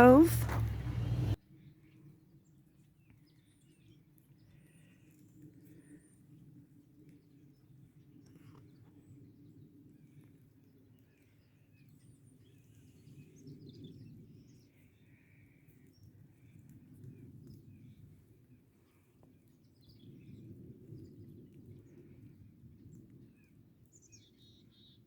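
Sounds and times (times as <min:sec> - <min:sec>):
low rumble: 0:00.0 - 0:01.4.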